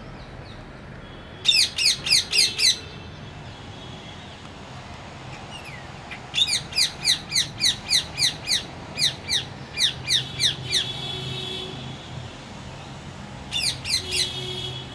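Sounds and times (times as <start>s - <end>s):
parrot chirping and screeching: 5.3s - 10.8s, 13.5s - 14.3s.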